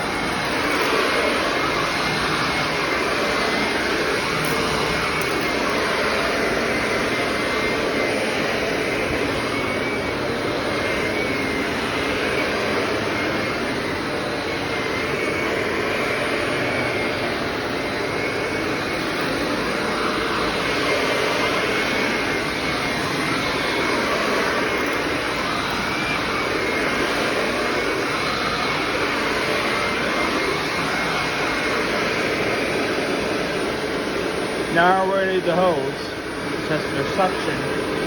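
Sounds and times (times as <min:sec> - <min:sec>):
upright vacuum cleaner running: 0:00.0 - 0:38.0.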